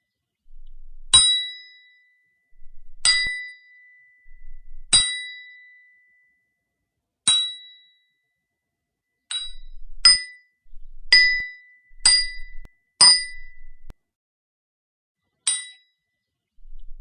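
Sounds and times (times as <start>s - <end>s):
hammer striking a chisel: 11.1s - 13.9s.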